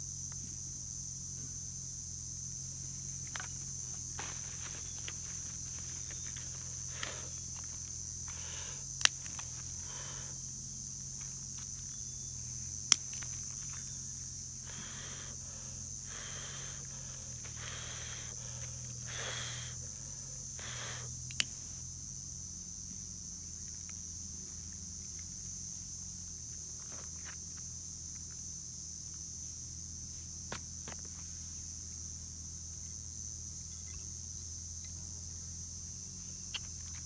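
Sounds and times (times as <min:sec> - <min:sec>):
high-pitched insect drone: 0:00.0 - 0:26.5.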